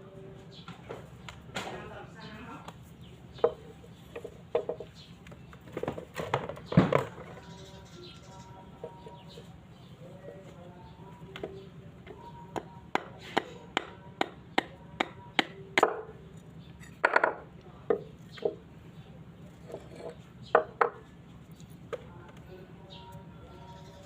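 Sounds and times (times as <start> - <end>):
steady low hum: 0.0 - 24.0
knocks on a hard object: 3.4 - 4.9, 17.0 - 18.6, 20.5 - 21.0.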